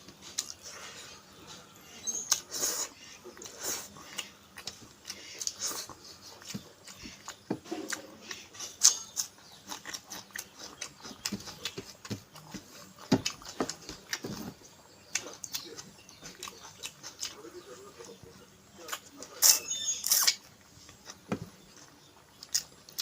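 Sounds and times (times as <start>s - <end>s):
person chewing with lip smacks: 3.4s - 14.2s.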